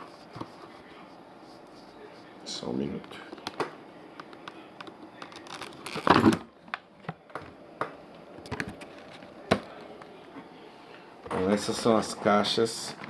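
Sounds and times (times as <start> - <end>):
packaging rustle: 5.2 - 6.9.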